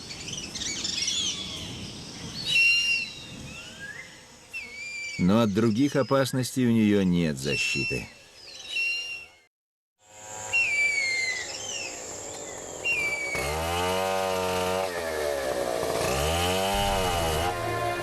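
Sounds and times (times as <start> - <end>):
whistled bird calls: 2.4 - 5.3, 7.5 - 9.5, 10.5 - 13.4
chainsaw revving: 10.0 - 11.6, 12.8 - 18.0
low hum: 16.5 - 18.0.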